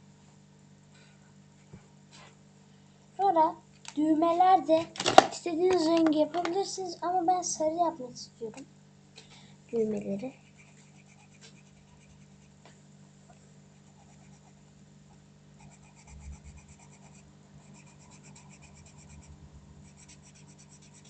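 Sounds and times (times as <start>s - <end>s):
faint steady hum: 0.0s - 21.0s
pen scratching on card: 10.3s - 12.6s, 13.9s - 14.6s, 15.6s - 19.3s, 19.9s - 21.0s.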